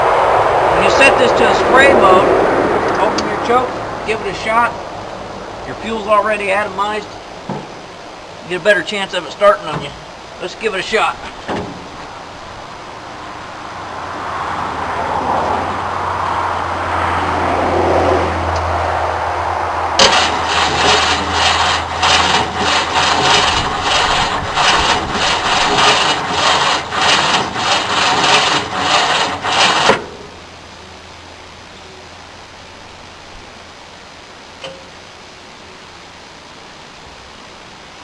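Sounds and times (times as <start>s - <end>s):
low hum: 0.0s - 5.7s
engine starter cranking: 20.0s - 30.4s.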